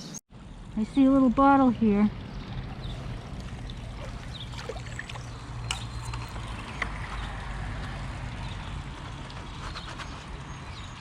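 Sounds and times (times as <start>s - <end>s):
shallow river water rushing: 2.1s - 9.6s.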